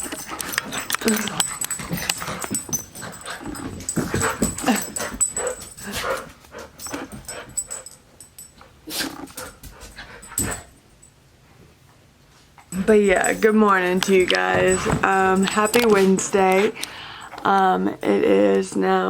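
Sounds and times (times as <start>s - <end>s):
dogs scuffling: 0.0s - 10.7s, 12.4s - 18.0s.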